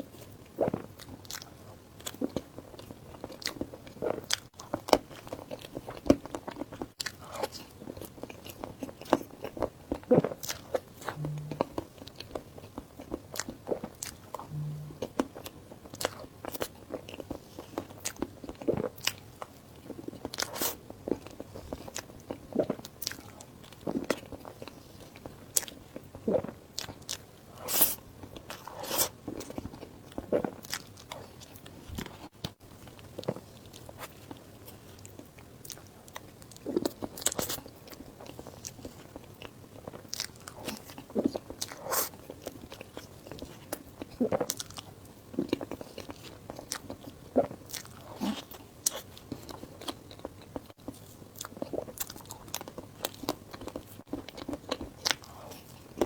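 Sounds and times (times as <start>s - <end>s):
mouth clicks: 11.2s - 11.7s.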